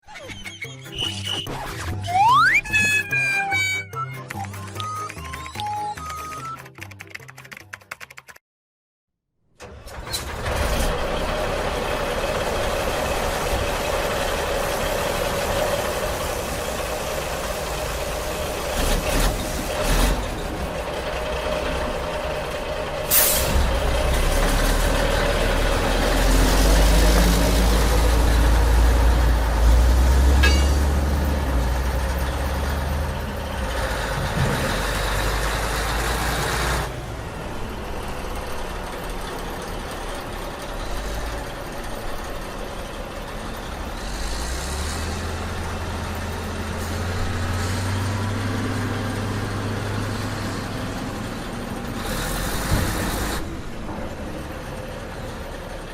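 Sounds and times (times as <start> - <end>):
diesel truck engine rumbling: 2.0 - 6.2, 9.6 - 55.9
air brake hiss: 23.1 - 23.7.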